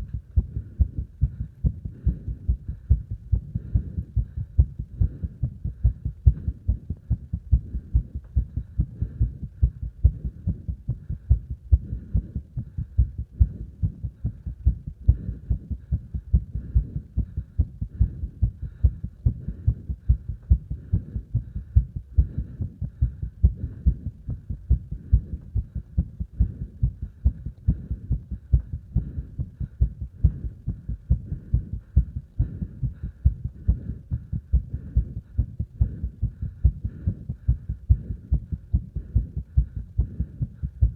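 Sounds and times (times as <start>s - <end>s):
fast heartbeat thumps: 0.0s - 40.9s
heavy breathing: 0.0s - 40.9s.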